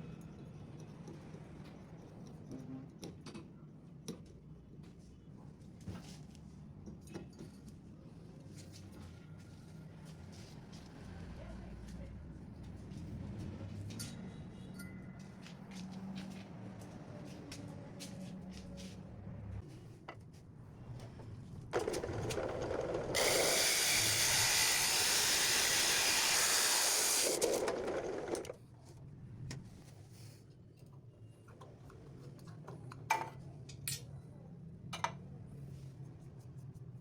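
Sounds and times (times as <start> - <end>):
spray hiss: 23.2 - 27.2.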